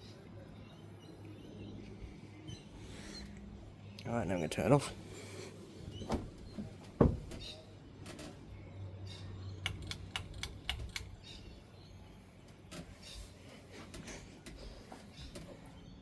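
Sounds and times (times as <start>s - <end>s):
fan motor humming low: 0.2s - 16.0s
light ticking clicks: 9.6s - 11.4s.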